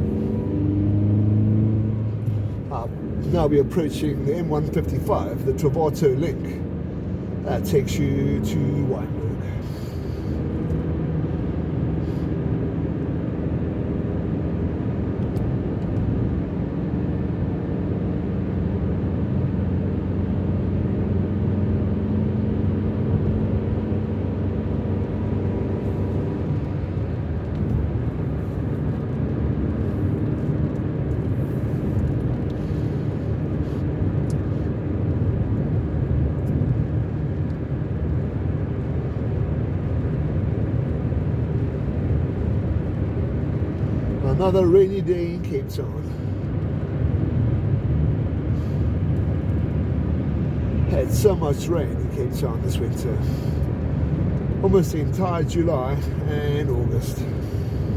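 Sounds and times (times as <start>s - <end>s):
car engine and road noise: 0.0s - 57.9s.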